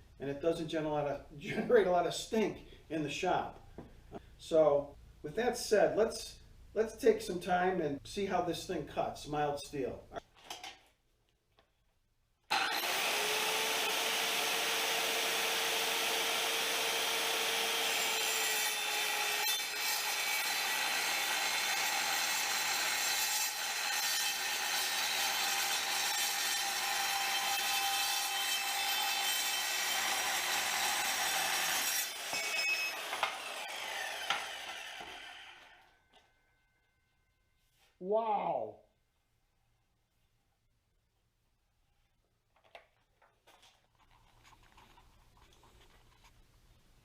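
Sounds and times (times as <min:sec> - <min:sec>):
circular saw cutting steel: 0:12.5 - 0:35.8.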